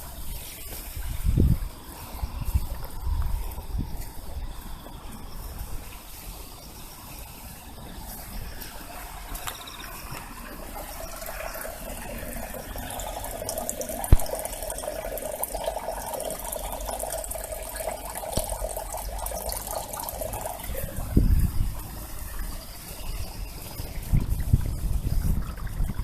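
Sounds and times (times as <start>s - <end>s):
water running and pouring: 5.2s - 26.0s.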